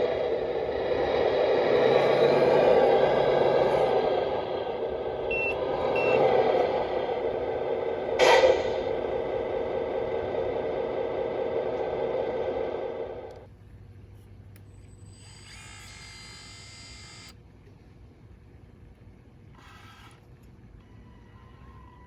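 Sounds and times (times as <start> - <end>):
short high beeps: 5.3 - 6.3
electric motor whine: 15.0 - 17.4.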